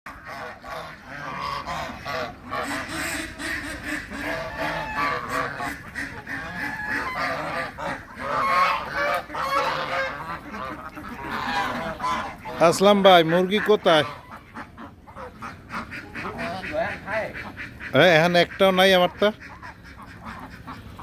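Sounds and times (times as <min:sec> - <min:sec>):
poultry flock calling: 0:00.1 - 0:21.0.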